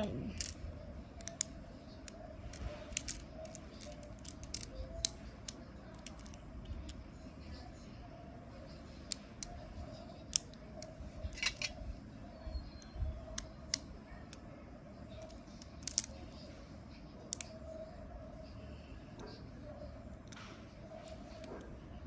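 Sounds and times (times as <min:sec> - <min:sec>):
magnetic rods clicking onto balls: 0:00.3 - 0:00.6, 0:01.2 - 0:07.0, 0:15.2 - 0:16.2.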